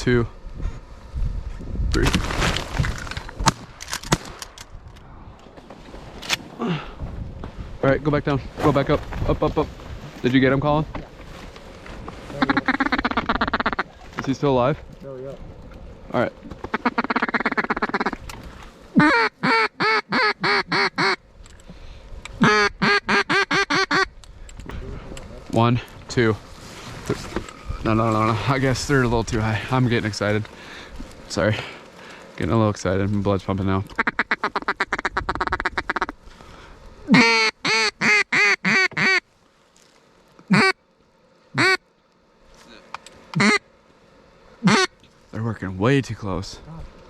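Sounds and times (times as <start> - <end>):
duck call chattering chuckle: 12.4 - 13.9, 16.7 - 18.2, 19.0 - 21.2, 22.4 - 24.1, 37.1 - 39.2, 40.5 - 40.8, 41.6 - 41.8, 43.4 - 43.6, 44.6 - 44.9
duck call quacks: 12.4 - 13.9, 16.7 - 18.2, 19.0 - 21.2, 22.4 - 24.1, 34.0 - 36.2, 37.1 - 39.2, 40.5 - 40.8, 41.6 - 41.8, 43.3 - 43.6, 44.6 - 45.0.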